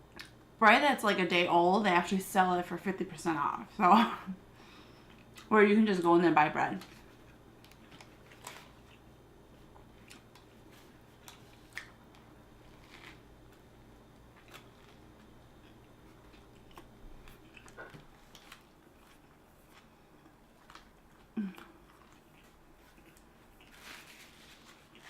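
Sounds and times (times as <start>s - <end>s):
person chewing: 4.9s - 5.5s, 6.9s - 25.0s.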